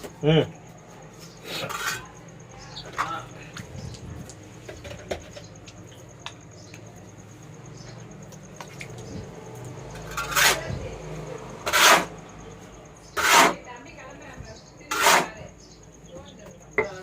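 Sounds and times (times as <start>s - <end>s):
damp sand scraped by hand: 13.2s - 13.6s, 14.9s - 15.4s.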